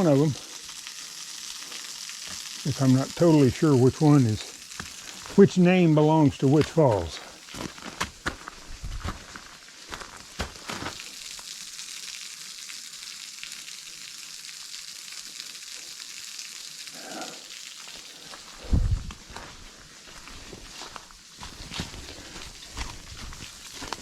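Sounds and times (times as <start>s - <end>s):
waterfall splashing into pool: 0.0s - 18.6s.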